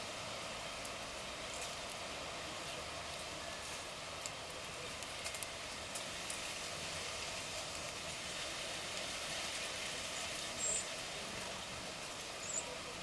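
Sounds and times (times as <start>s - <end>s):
outdoor background hiss: 0.0s - 13.0s.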